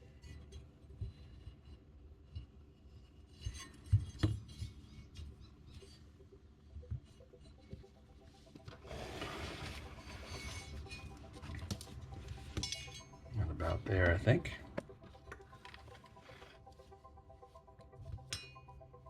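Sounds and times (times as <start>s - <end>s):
tools knocking and clinking: 12.5s - 13.2s.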